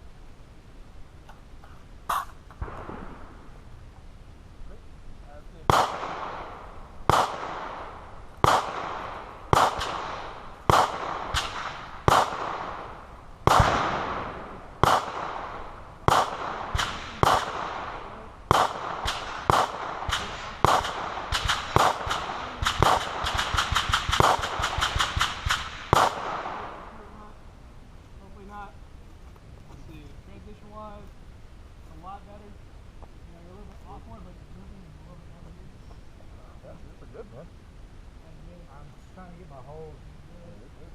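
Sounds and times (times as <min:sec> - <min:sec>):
gunshots with echo: 0:05.7 - 0:27.0.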